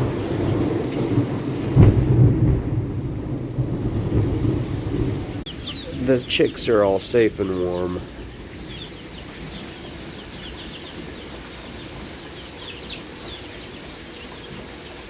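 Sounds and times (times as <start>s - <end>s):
chicks peeping: 0.0s - 1.8s, 5.4s - 15.0s
rain hiss: 0.0s - 15.0s.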